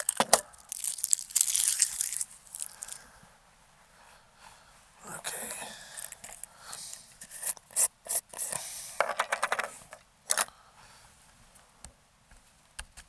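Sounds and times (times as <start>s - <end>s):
small hard objects scraping: 0.0s - 3.1s, 5.4s - 10.5s.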